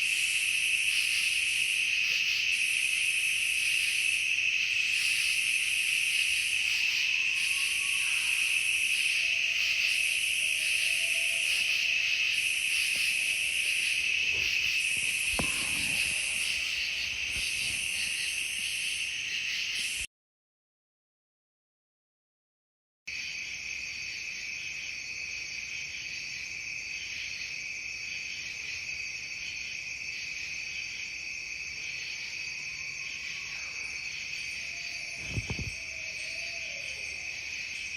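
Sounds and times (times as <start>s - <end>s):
cricket trill: 0.0s - 20.1s, 23.1s - 37.9s
high pulsing insect sound: 0.0s - 20.1s.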